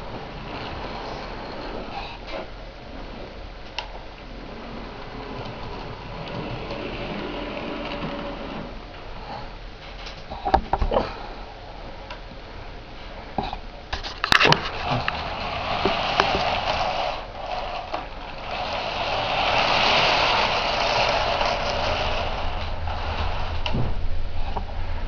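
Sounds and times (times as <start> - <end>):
model train whirring hum: 0.0 - 9.6, 14.6 - 23.8
sharp clicks and knocks: 9.8 - 11.1, 13.4 - 16.8.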